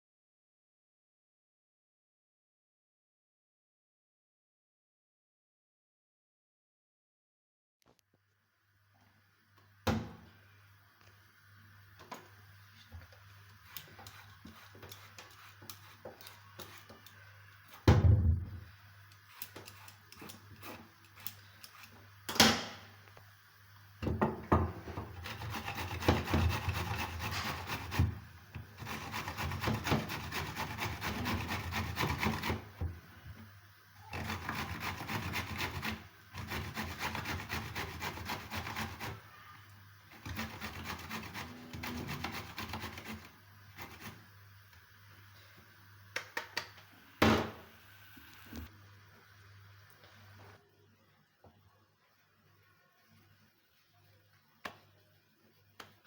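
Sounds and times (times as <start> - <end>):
utensil scraping and rubbing: 12.7 - 17.8, 19.1 - 22.1, 25.0 - 32.8, 34.0 - 39.3, 40.1 - 44.4.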